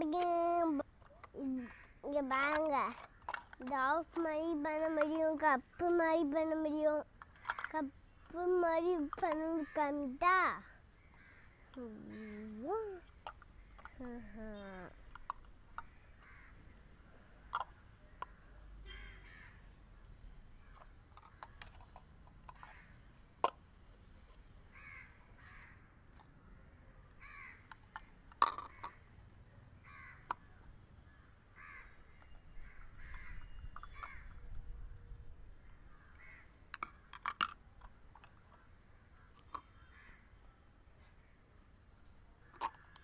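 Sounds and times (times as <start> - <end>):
plastic toy cups clacking: 0.0 - 10.6, 12.5 - 16.3, 17.3 - 18.4, 20.6 - 22.8, 23.4 - 23.6, 27.6 - 29.1, 32.2 - 34.7, 36.7 - 39.7, 42.5 - 43.0.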